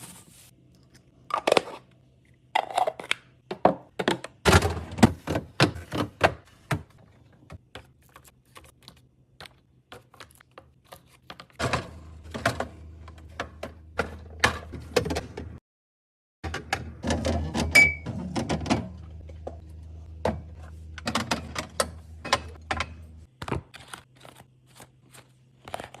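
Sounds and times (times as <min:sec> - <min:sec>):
low steady hum: 0:16.5 - 0:26.0.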